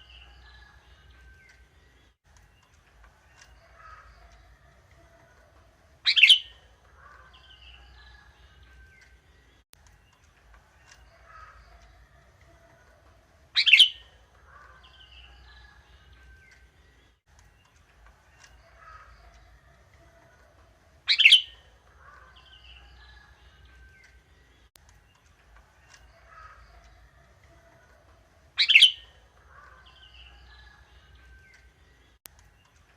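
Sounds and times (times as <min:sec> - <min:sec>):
faint bird twittering: 0:06.0 - 0:09.2, 0:13.6 - 0:16.7, 0:21.1 - 0:24.2, 0:28.6 - 0:31.7
sharp bird calls: 0:06.0 - 0:09.2, 0:13.6 - 0:16.6, 0:21.1 - 0:24.2, 0:28.6 - 0:31.7.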